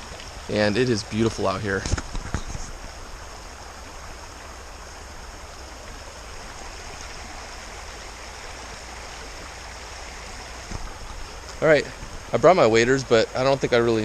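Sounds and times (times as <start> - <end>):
stream rushing water: 0.0 - 14.0.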